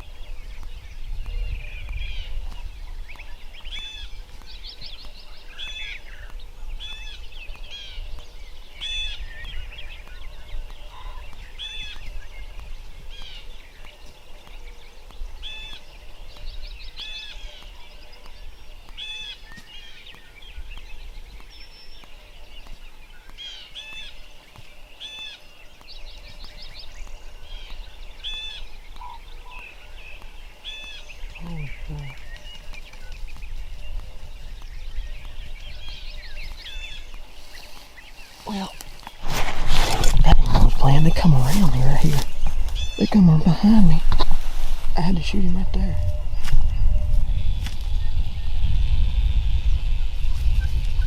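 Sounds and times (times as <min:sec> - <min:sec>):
steady low rumble: 0:38.3 - 0:51.0.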